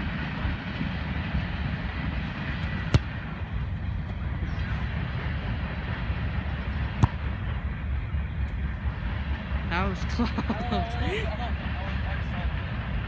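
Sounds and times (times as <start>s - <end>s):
steady low rumble: 0.0s - 13.0s
ball hitting crossbar thump: 2.6s - 3.3s, 6.9s - 7.3s.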